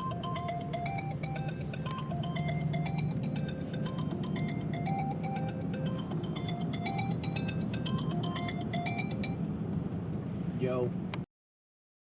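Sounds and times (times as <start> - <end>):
fast ticking beat: 0.0 - 9.4
light melody of short notes: 0.0 - 9.5.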